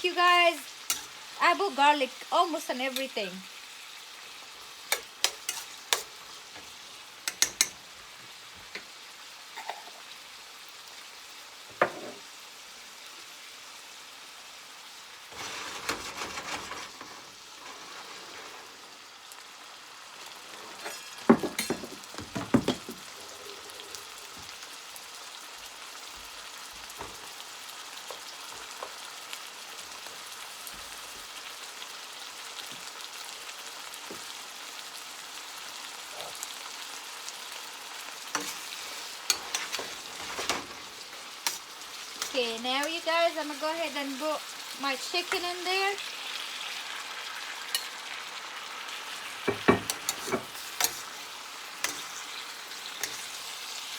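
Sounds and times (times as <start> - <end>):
vegetables sizzling in a pan: 0.0 - 53.9
spatula clinking and scraping pan: 0.8 - 1.3, 4.8 - 7.9, 15.4 - 19.0, 20.2 - 23.2, 38.3 - 44.3, 47.6 - 48.2, 49.0 - 53.8.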